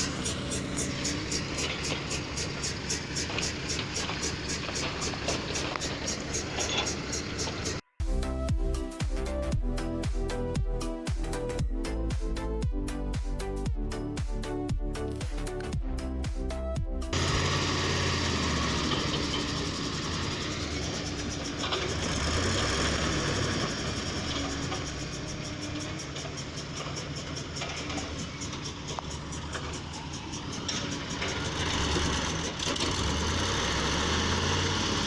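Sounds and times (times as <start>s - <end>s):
diesel engine running: 0.0s - 8.4s, 16.0s - 35.0s.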